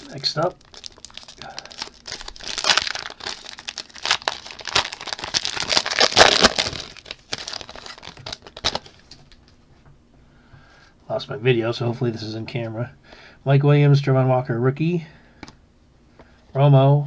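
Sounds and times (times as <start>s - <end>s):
plastic wrapper crinkling and tearing: 0.0s - 9.6s.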